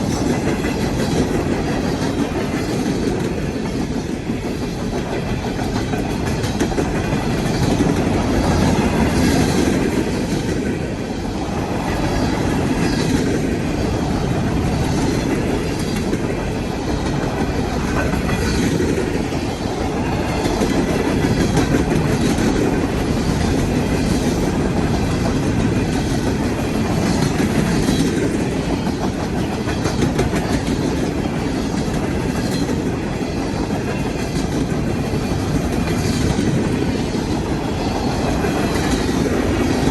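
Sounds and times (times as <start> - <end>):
train cars rolling rumble: 0.0 - 39.9
wheels clicking over rail joints: 0.0 - 39.9.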